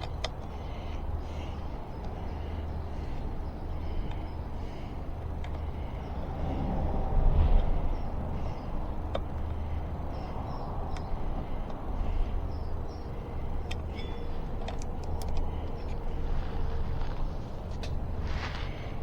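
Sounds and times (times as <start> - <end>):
low background rumble: 0.0 - 19.0.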